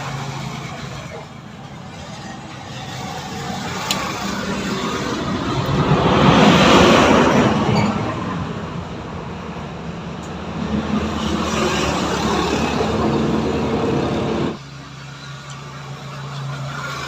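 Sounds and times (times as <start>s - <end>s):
engine running with low hum: 8.1s - 17.0s.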